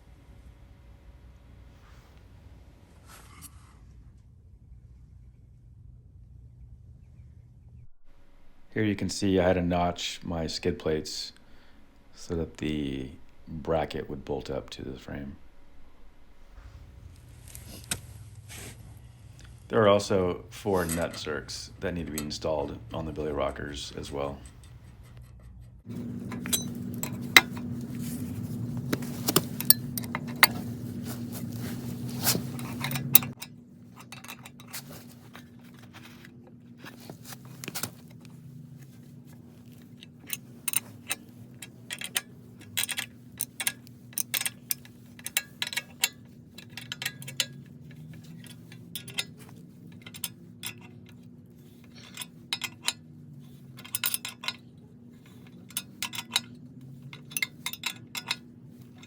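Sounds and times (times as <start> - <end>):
low hum: 3.6 - 35.5
hand tools clicking and clinking: 20.8 - 36.3, 39.7 - 59.0.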